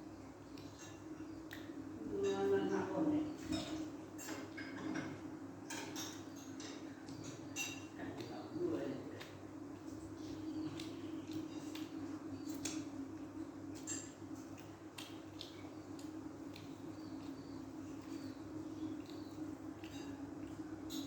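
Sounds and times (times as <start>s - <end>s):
wet chewing smacks: 1.4s - 1.9s, 8.1s - 21.0s.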